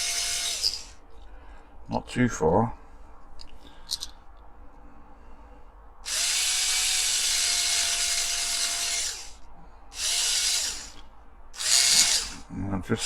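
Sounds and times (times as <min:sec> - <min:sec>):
small electric drill spinning: 0:00.0 - 0:01.0, 0:06.0 - 0:09.4, 0:10.0 - 0:11.0, 0:11.6 - 0:12.4.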